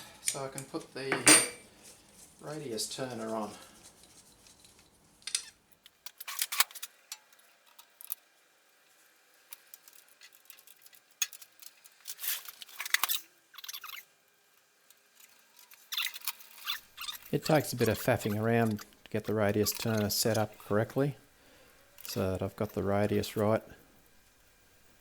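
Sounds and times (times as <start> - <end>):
metal tooling clinking and scraping: 1.1 - 1.7, 15.2 - 20.9.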